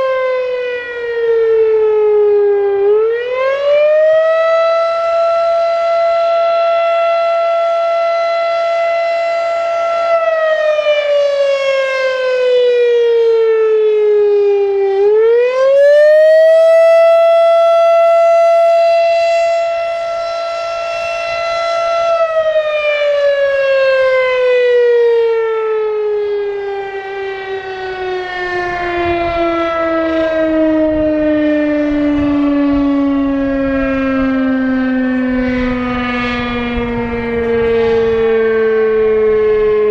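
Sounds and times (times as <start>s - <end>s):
warning siren: 0.0s - 39.9s
wind buffeting microphone: 26.9s - 39.9s.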